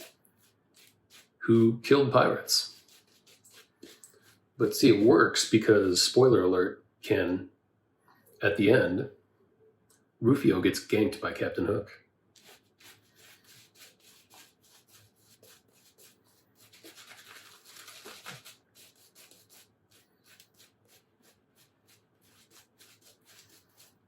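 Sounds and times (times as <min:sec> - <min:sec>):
shaving brush rubbing lather: 0:00.0 - 0:06.2, 0:12.4 - 0:24.0.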